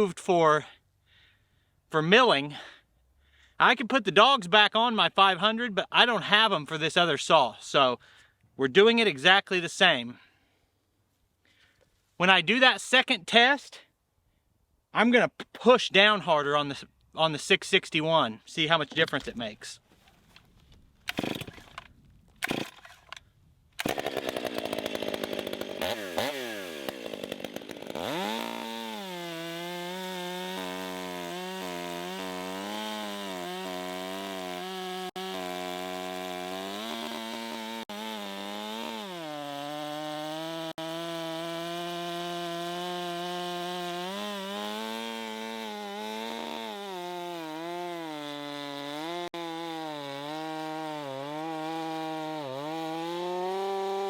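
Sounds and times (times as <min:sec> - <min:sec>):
chainsaw cutting log: 0:21.1 - 0:23.2, 0:23.8 - 0:54.0.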